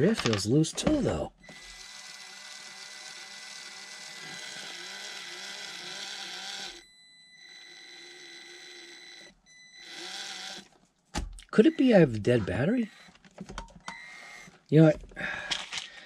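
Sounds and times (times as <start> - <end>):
small electric motor whirring: 1.4 - 10.8, 12.8 - 13.2, 13.9 - 14.6.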